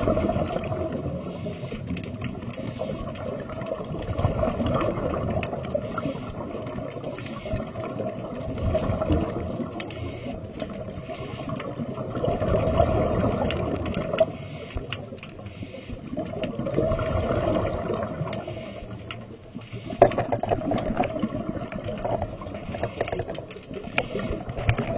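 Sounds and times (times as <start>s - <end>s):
light clicks and scrapes: 1.3s - 3.8s, 9.7s - 11.8s, 18.2s - 21.1s, 21.8s - 24.9s.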